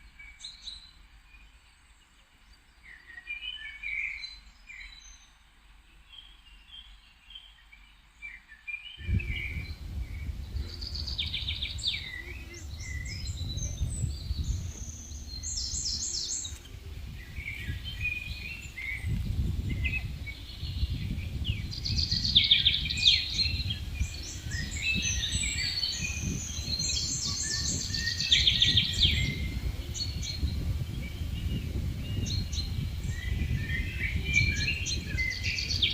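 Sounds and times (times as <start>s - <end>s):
songbirds chirping and trilling: 0.0s - 35.9s
wind buffeting microphone: 9.0s - 35.9s.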